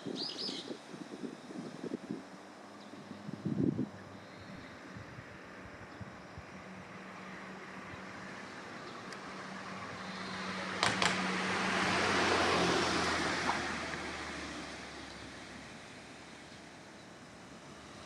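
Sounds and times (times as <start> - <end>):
tyre and road noise: 0.0 - 18.0
vehicle engine hum: 0.0 - 18.0
sharp knocks: 10.8 - 11.3.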